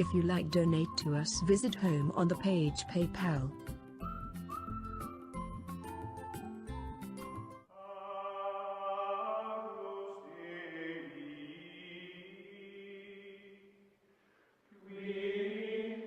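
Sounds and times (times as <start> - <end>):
chant-like music tones: 7.7 - 13.5.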